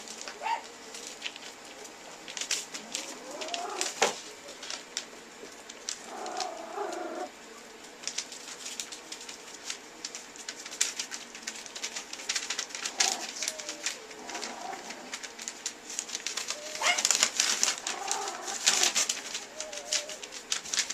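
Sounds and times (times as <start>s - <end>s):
puppies whining and whimpering: 16.4s - 17.2s, 17.9s - 20.4s.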